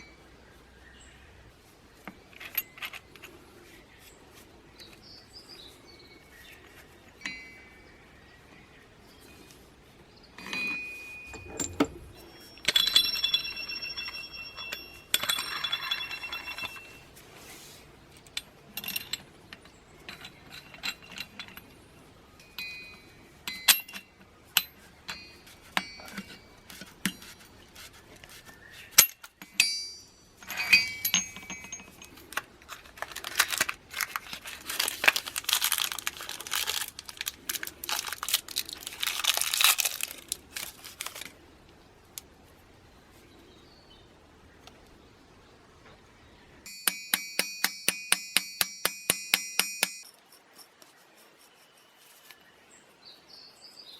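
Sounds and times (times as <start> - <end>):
metal parts clinking: 2.3 - 3.4, 10.4 - 17.1, 18.4 - 27.4, 29.0 - 41.4
metal scraping and rattling: 10.4 - 17.8, 18.7 - 22.0.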